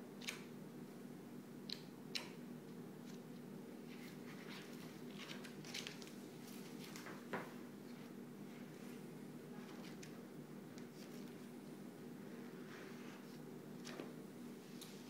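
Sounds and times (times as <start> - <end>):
steady low hum: 0.0 - 15.0
soft rustling strokes: 3.8 - 10.2, 10.8 - 15.0.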